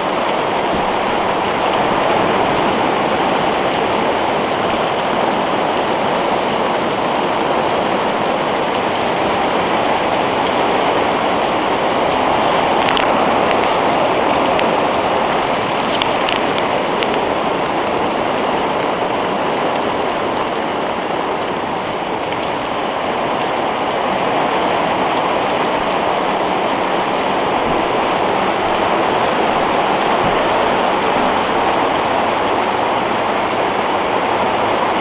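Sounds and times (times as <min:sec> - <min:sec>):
hail and rain pelting a roof: 0:00.0 - 0:35.0.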